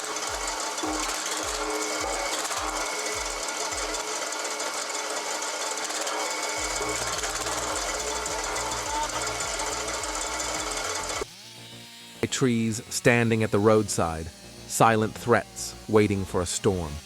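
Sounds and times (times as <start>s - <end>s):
background music with thudding beat: 0.0s - 4.0s, 6.6s - 11.2s
wood-cutting machine clatter: 0.0s - 11.3s
held bass note: 6.6s - 11.2s.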